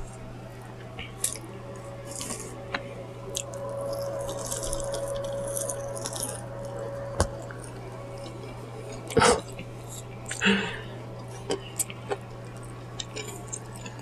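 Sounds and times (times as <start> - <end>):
faint steady hum: 0.0 - 14.0
chewing and mouth smacking: 11.2 - 14.0.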